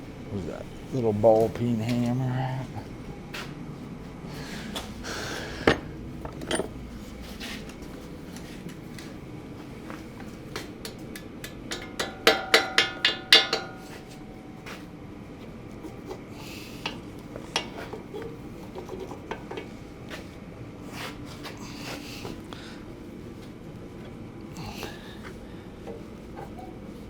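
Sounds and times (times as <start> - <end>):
light metal clinks and knocks: 5.6 - 7.1
hammer blows on ringing steel: 11.7 - 14.2.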